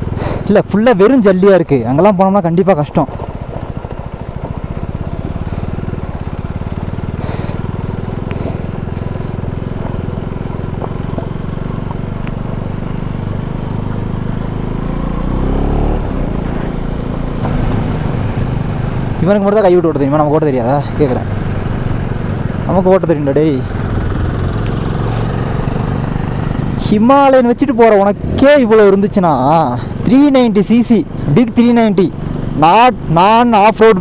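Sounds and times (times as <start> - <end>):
motorcycle engine running: 0.0 - 33.8
light ticks: 24.6 - 24.8.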